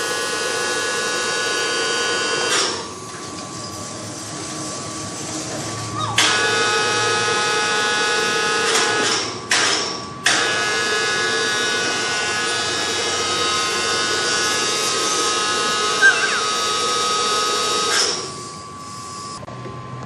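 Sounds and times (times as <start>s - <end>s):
power tool motor whine: 10.3s - 19.4s.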